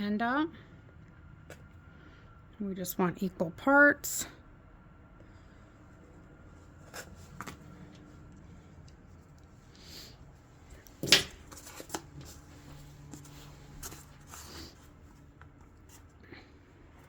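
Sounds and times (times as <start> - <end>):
soft rustles: 5.5 - 16.2.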